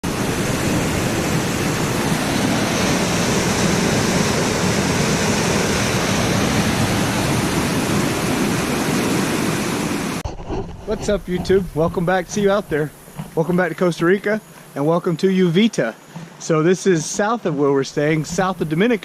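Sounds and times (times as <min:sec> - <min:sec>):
waterfall rushing: 0:00.0 - 0:10.2.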